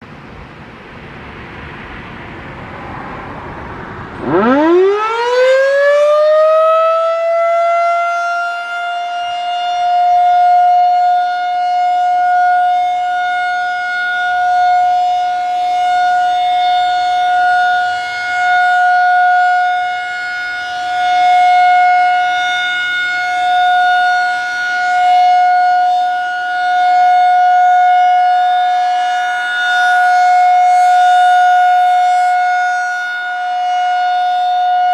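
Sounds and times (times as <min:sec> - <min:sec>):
rushing noise: 0:00.0 - 0:05.7
rotating siren wail: 0:01.6 - 0:34.9.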